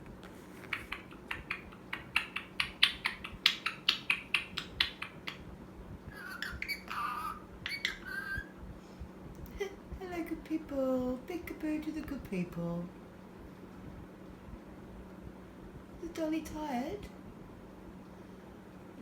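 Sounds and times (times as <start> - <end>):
parrot pitched calls: 0.6 - 5.5, 6.1 - 8.6
parrot chirping clicks: 0.7 - 5.4, 6.2 - 8.4.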